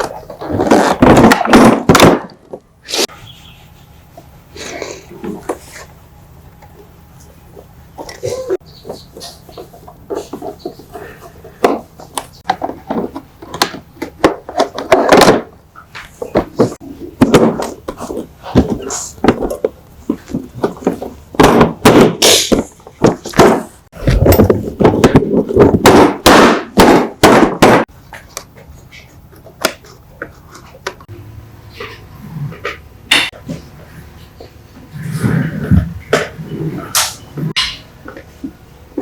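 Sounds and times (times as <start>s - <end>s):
loud knocks and thuds: 0.5s - 2.6s, 14.2s - 15.6s, 16.3s - 27.9s.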